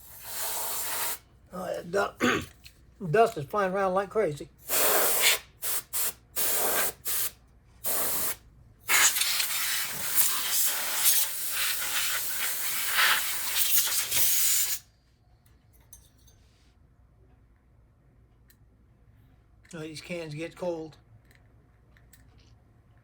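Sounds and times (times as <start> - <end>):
compressed air duster spraying: 0.0 - 1.2, 4.6 - 14.8.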